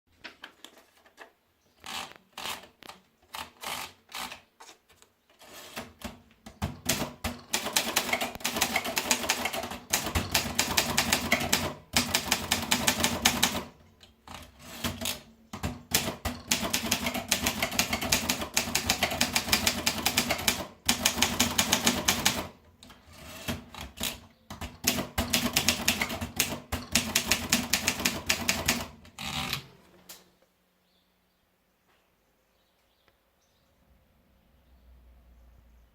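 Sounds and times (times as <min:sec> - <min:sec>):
typewriter typing: 0:05.4 - 0:29.7.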